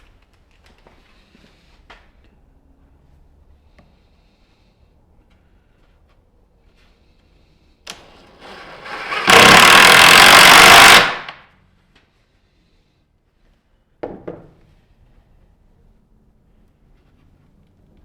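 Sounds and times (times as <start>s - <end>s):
loud power tool running: 8.0s - 11.4s.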